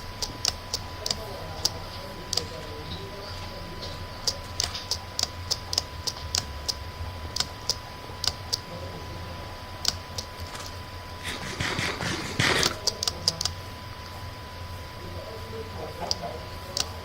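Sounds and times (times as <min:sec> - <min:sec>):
sharp clicks: 0:00.0 - 0:03.0, 0:04.2 - 0:08.7, 0:09.8 - 0:10.8, 0:11.5 - 0:13.6, 0:16.0 - 0:17.0
low hum: 0:00.0 - 0:17.0.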